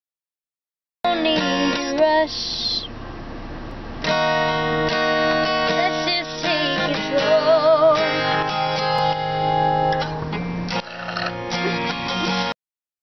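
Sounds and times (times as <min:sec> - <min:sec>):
guitar strummed: 0:01.1 - 0:02.3, 0:04.0 - 0:12.5.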